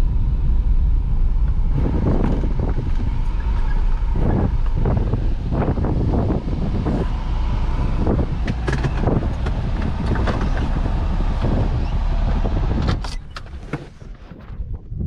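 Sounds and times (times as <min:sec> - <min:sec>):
car road rumble: 0:00.0 - 0:15.0
rattling clicks and knocks: 0:08.0 - 0:14.0.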